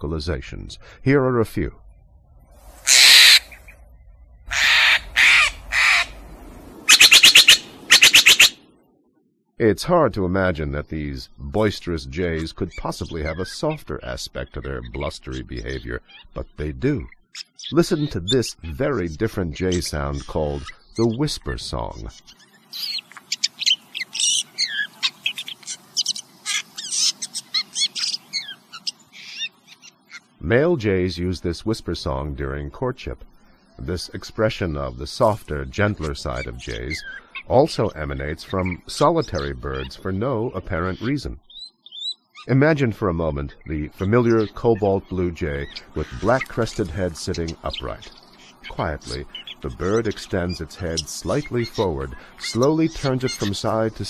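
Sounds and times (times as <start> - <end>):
jay harsh calls: 2.8 - 3.7, 4.4 - 8.6, 22.7 - 30.4, 45.6 - 54.0.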